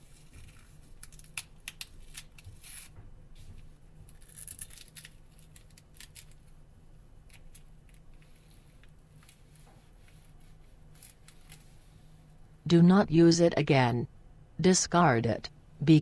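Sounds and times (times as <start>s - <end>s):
sheet peeling crinkle and clicks: 0.0s - 6.6s, 7.2s - 11.9s.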